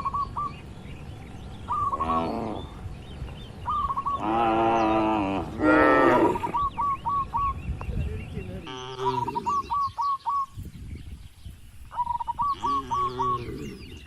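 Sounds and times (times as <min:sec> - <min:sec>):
small bird chirping: 0:00.0 - 0:05.2, 0:06.4 - 0:14.0
cattle mooing: 0:04.1 - 0:06.6, 0:08.6 - 0:09.7, 0:12.6 - 0:13.8.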